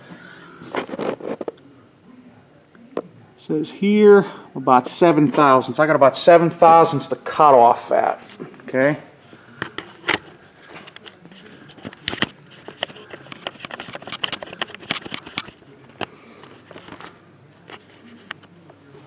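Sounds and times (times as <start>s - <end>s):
clicks taps and scraping: 8.2s - 19.0s.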